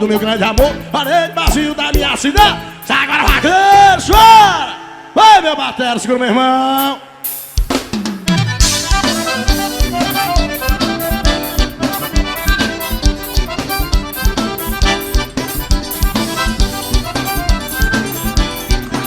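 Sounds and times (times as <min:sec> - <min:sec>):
accordion melody: 0:00.0 - 0:04.4, 0:08.1 - 0:19.0
drum kit beat: 0:00.0 - 0:04.6, 0:06.8 - 0:19.0.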